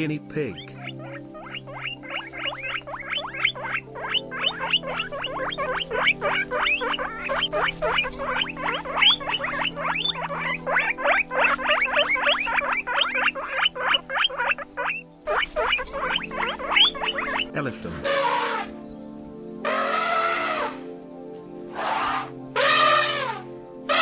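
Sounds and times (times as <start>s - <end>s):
low background music: 0.0s - 24.0s
guinea pig squeaking: 0.4s - 17.6s.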